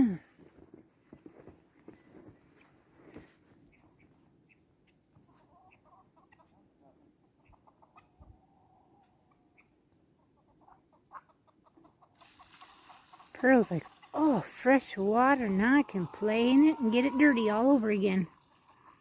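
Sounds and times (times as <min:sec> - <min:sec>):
chickens clucking: 0:05.2 - 0:19.0.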